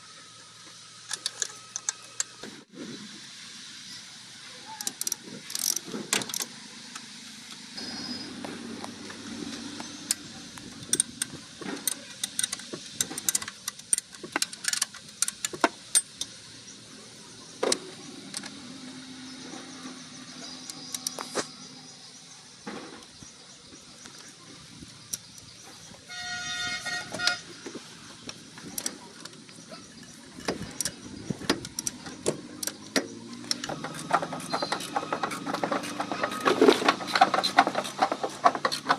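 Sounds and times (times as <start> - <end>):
low motor hum: 6.6 - 12.3, 16.3 - 38.9
metal tools clinking: 28.6 - 38.9.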